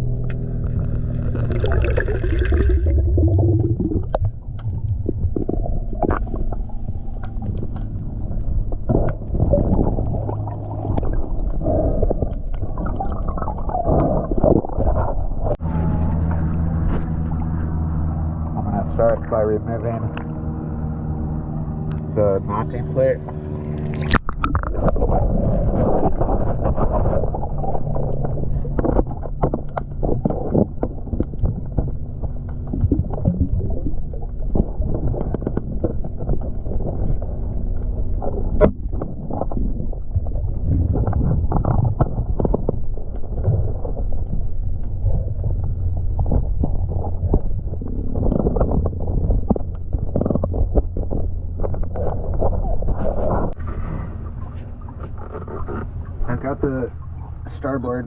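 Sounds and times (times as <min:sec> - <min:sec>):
diver's bubbling breath: 0:00.7 - 0:07.5, 0:08.9 - 0:15.6.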